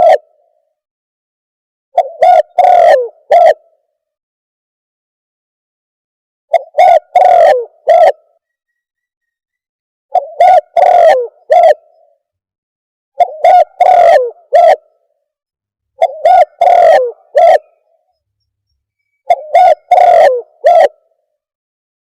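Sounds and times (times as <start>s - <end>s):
dove cooing: 0.0s - 0.3s, 2.0s - 3.7s, 6.5s - 8.4s, 10.1s - 12.2s, 13.2s - 14.9s, 16.0s - 18.0s, 19.3s - 21.2s.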